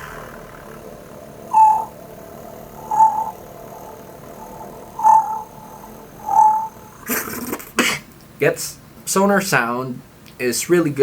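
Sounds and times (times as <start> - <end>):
voice rolled-r vibration: 0.0 - 7.6.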